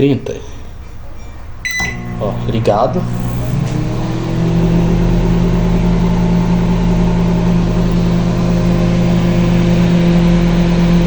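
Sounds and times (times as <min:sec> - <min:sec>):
microwave fan noise: 0:00.8 - 0:11.0
microwave oven humming: 0:01.4 - 0:11.0.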